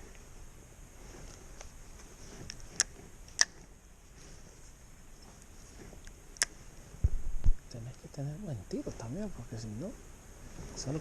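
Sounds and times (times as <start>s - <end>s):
faint background hiss: 0.0s - 11.0s
sharp clicks: 2.5s - 3.6s.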